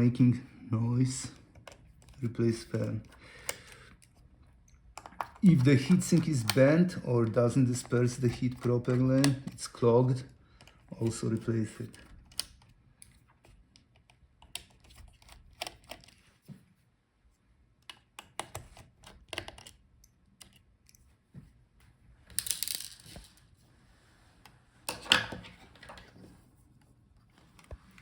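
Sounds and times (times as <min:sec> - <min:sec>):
screwdriver clicks and taps: 0:17.8 - 0:21.0.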